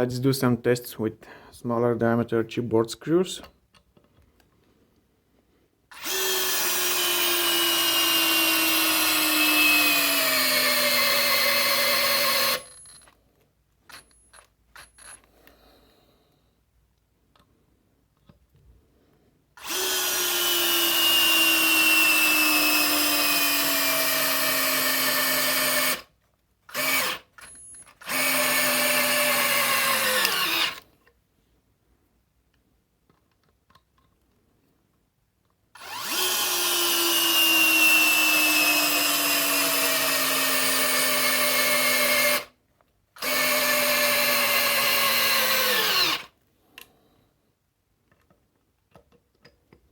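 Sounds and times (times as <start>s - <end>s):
cordless drill motor whine: 5.9s - 12.9s, 19.6s - 26.0s, 26.7s - 30.8s, 35.8s - 42.4s, 43.2s - 46.3s.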